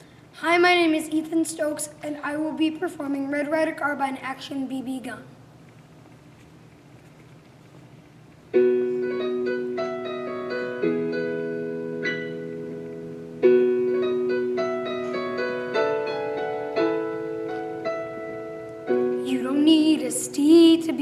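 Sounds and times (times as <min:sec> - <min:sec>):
faint hiss: 0:00.0 - 0:21.0
piano chords: 0:08.5 - 0:21.0.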